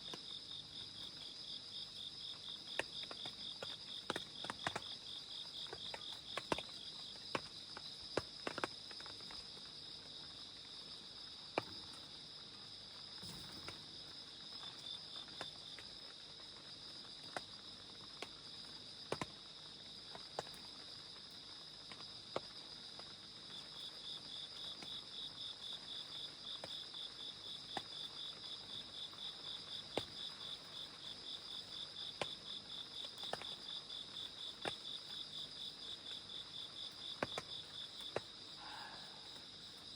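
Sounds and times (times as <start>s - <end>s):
raindrops tapping: 2.6s - 10.2s, 13.0s - 20.8s, 26.5s - 36.3s, 37.1s - 39.0s
insects trilling: 25.5s - 39.9s.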